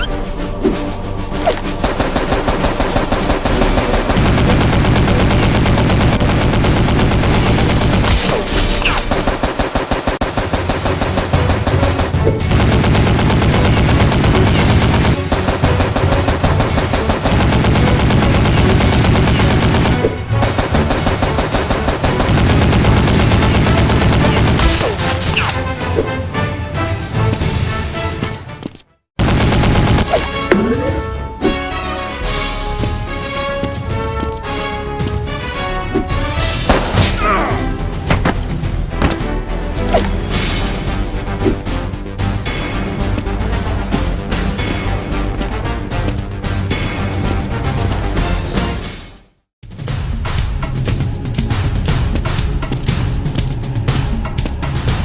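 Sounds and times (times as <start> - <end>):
background music: 0.0 - 55.0
machine-gun fire bursts: 1.8 - 25.1, 29.2 - 30.4.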